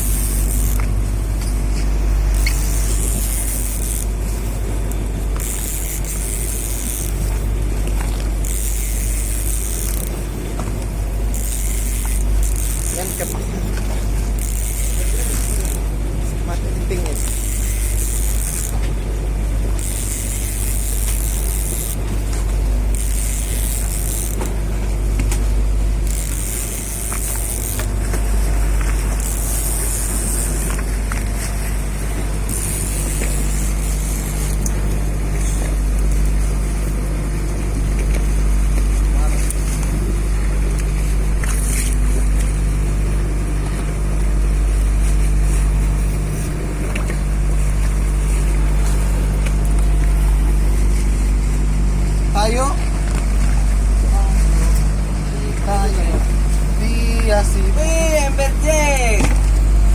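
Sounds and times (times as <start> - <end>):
boat engine droning: 0.0 - 59.9.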